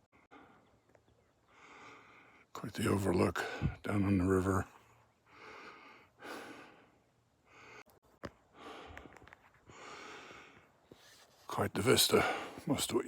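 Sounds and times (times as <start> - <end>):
person breathing: 1.5 - 2.5, 5.3 - 8.0, 8.6 - 10.7, 12.2 - 12.6.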